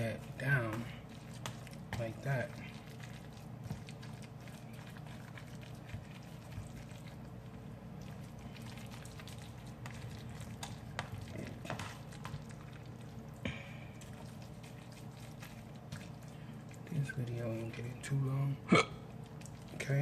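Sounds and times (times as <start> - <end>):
utensil tapping and scraping: 0.0 - 7.2, 8.9 - 12.9
steady background hum: 0.0 - 20.0.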